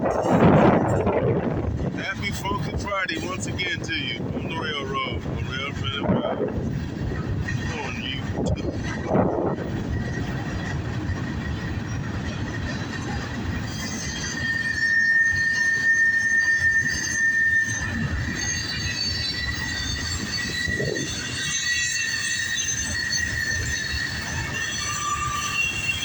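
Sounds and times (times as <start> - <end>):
train rumble: 0.0 - 26.0
train wheel squeal: 6.9 - 26.0.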